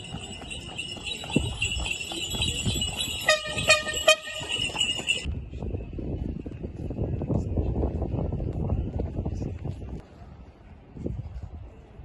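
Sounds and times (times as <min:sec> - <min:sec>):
hoof clops: 0:00.0 - 0:05.3
bells jingling: 0:00.0 - 0:05.4
horn toots: 0:03.0 - 0:05.0.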